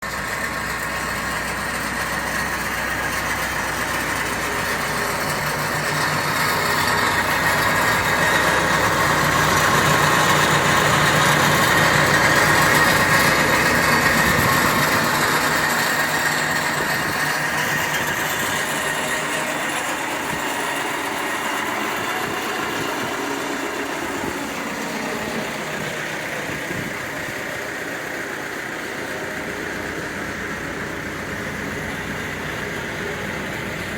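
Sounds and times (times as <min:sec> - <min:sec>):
diesel engine idling: 0:00.0 - 0:33.9.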